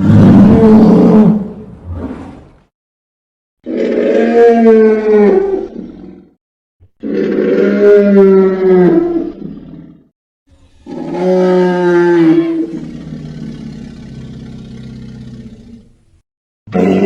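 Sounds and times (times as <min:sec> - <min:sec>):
monster roaring: 0:00.0 - 0:01.5, 0:03.6 - 0:06.3, 0:10.7 - 0:15.8, 0:16.7 - 0:17.0.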